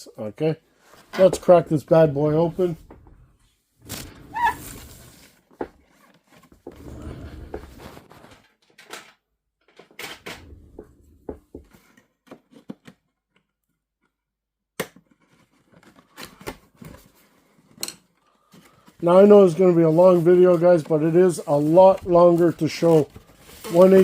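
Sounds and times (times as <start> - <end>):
packaging scraping and rustling: 3.8 - 6.7, 18.7 - 24.0.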